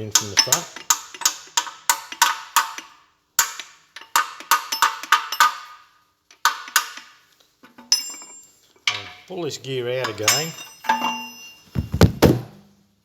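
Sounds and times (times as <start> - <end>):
metal gears clinking: 7.8 - 9.2, 10.0 - 11.6.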